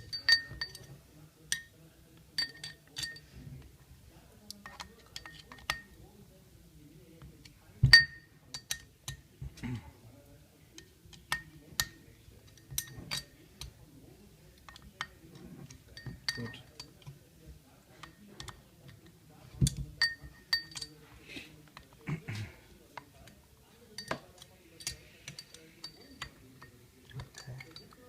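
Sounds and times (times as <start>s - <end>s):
metal tools clinking: 0.0s - 1.8s, 2.4s - 3.4s, 11.2s - 13.7s, 14.6s - 17.0s, 19.6s - 21.2s, 23.8s - 28.0s.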